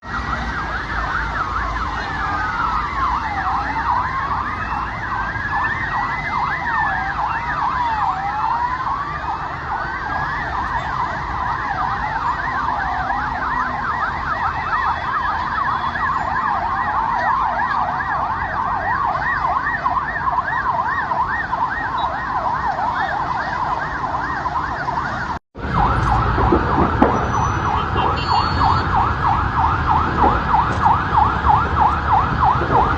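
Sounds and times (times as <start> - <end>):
emergency sirens wailing and yelping: 0.0 - 32.9.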